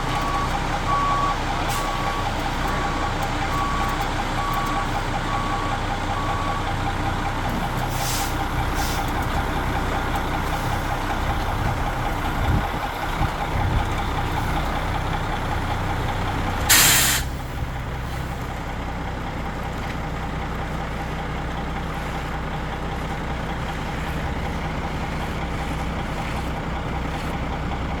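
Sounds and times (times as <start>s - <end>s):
reversing beeps: 0.0s - 9.1s
diesel truck engine running: 0.0s - 28.0s
short air hisses: 7.9s - 9.0s, 16.7s - 17.4s
loud air-brake hiss: 16.7s - 17.4s.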